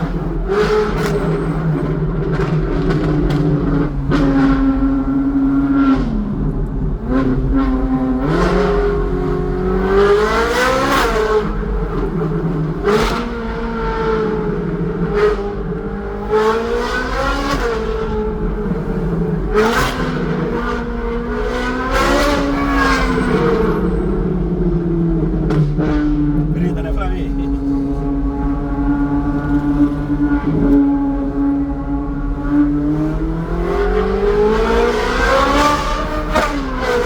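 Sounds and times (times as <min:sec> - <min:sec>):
exhaust cracks: 0:00.0 - 0:04.6
sports car engine revving: 0:00.0 - 0:37.0.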